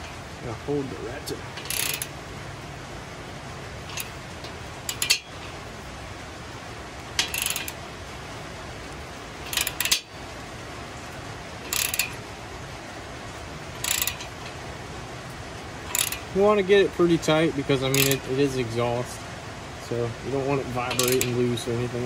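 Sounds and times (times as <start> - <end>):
socket ratchet clicking: 1.6 - 2.1, 3.9 - 4.1, 4.9 - 5.3, 7.2 - 7.8, 9.5 - 10.1, 11.7 - 12.2, 13.8 - 14.3, 15.9 - 16.3, 17.9 - 18.2, 20.9 - 21.3.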